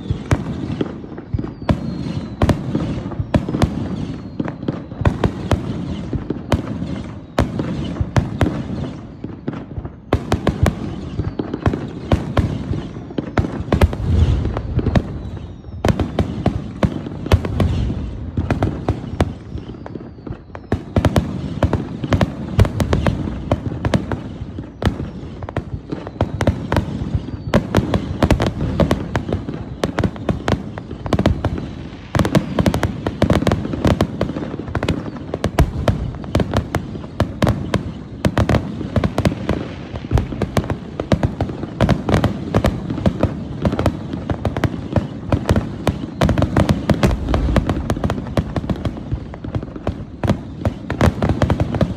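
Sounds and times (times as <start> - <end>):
faint falling whistles: 0.0 - 5.0, 12.7 - 21.2, 45.9 - 49.0
fireworks bangs and crackles: 0.0 - 51.9
low rumble of booms: 35.6 - 36.4, 47.0 - 48.6.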